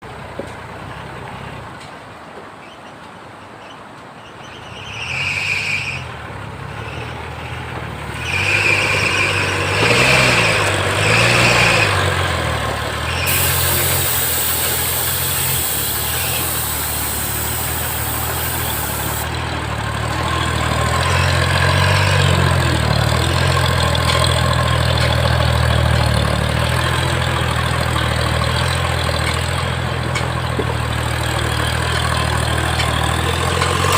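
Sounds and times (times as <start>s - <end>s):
truck engine revving under load: 5.0s - 33.9s
high engine whine: 8.1s - 28.2s.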